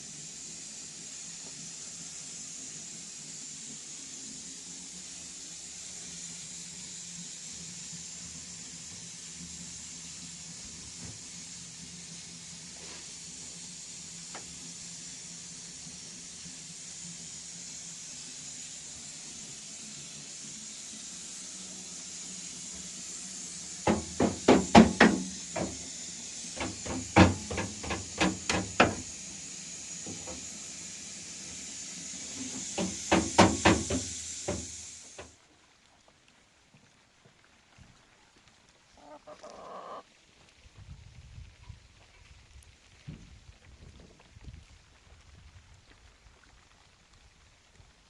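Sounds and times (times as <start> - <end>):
steady hiss: 0.0 - 48.0
sharp knocks: 23.9 - 25.8, 26.6 - 29.0, 32.8 - 34.7.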